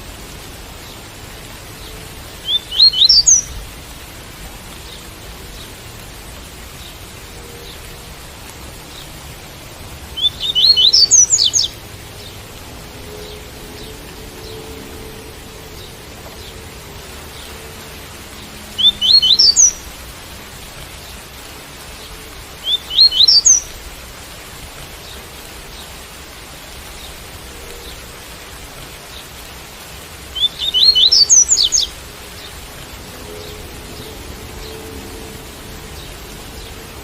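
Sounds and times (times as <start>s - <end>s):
rain hissing: 0.0s - 37.0s
bird singing: 2.4s - 3.5s, 10.2s - 12.4s, 18.3s - 19.8s, 22.6s - 23.7s, 30.3s - 32.5s.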